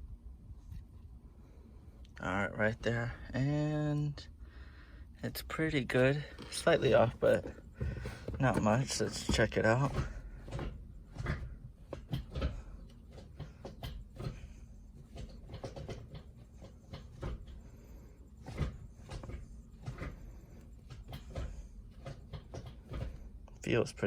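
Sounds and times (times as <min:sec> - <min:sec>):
gear lever clicks and knocks: 0:06.0 - 0:17.7.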